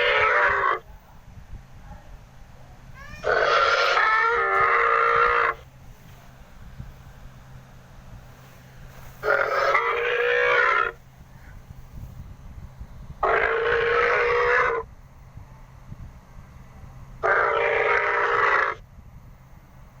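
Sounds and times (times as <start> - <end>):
faint low hum: 0.0 - 20.0
dinosaur calls: 3.0 - 5.6, 9.2 - 11.0, 13.2 - 14.9, 17.2 - 18.8.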